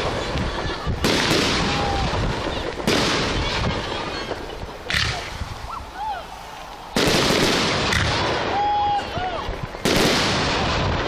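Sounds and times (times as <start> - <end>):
firework shells bursting: 0.0 - 10.9.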